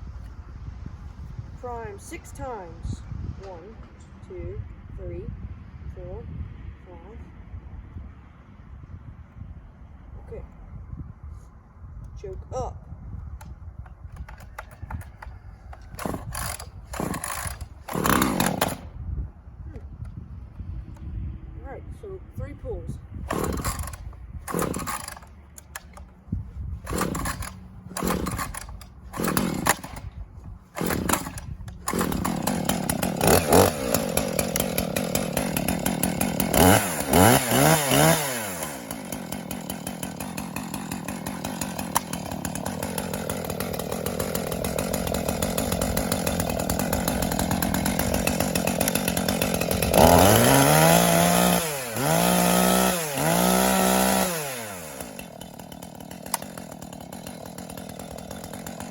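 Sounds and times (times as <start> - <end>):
starter cord pulls: 13.4 - 18.8, 23.3 - 26.2, 26.8 - 58.9
chainsaw engine idling and revving: 13.9 - 19.0, 23.2 - 58.9.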